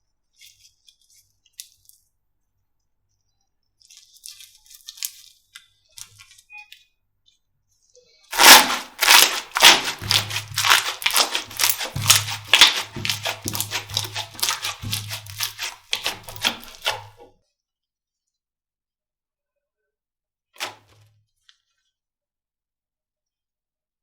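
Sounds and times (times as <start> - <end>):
slime crackling and popping: 8.3 - 17.2.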